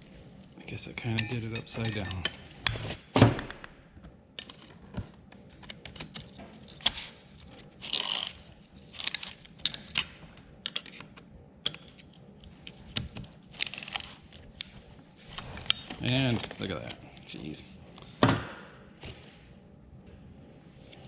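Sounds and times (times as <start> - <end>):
metal parts and tools clicking: 1.2 - 2.3.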